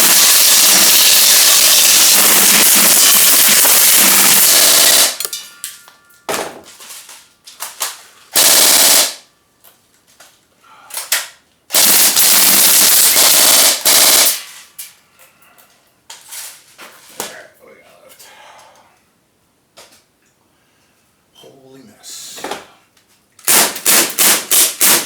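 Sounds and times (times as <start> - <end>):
airgun firing full auto: 0.0 - 5.3, 8.4 - 9.2, 11.7 - 14.4, 23.5 - 25.0.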